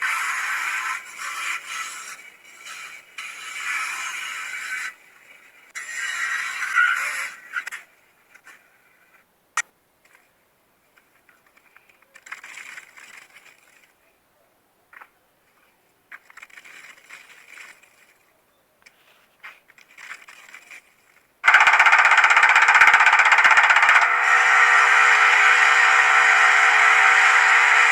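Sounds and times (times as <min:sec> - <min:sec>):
fast mechanical rattling: 0:21.4 - 0:27.9
loud steady machine rattling: 0:21.4 - 0:27.9.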